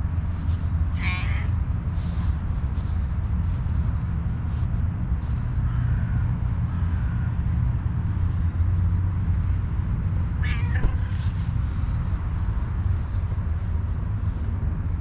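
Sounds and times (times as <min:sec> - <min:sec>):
cat meowing: 0:01.0 - 0:01.6, 0:10.4 - 0:11.2.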